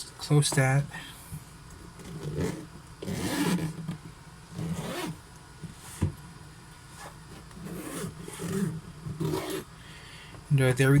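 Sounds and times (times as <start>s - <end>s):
case scraping and rubbing: 2.0s - 3.9s, 4.5s - 5.2s, 7.0s - 9.7s.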